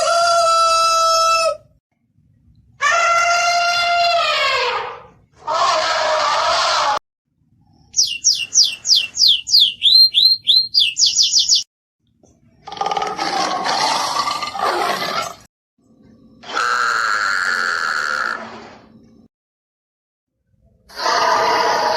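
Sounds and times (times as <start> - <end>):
harsh noisy animal call: 2.8 - 7.0, 12.6 - 15.5, 16.4 - 18.9, 20.9 - 21.9
loud animal call: 2.8 - 7.0, 16.4 - 18.7, 20.9 - 21.9
bird chirping rapidly: 7.9 - 11.7.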